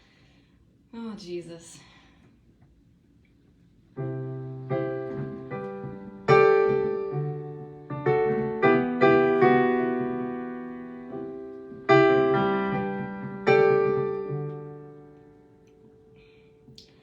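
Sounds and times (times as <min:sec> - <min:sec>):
piano playing slow chords: 0:04.0 - 0:17.0.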